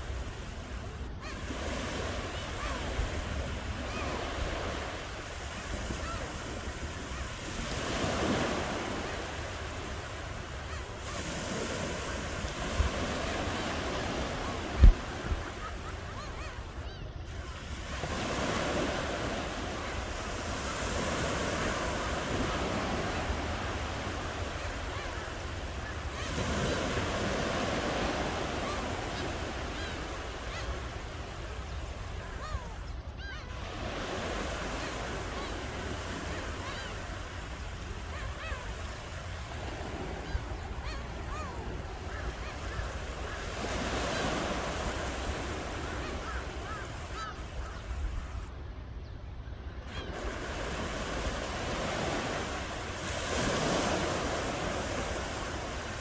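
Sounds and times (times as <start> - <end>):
ocean waves washing in: 0.0 - 1.4.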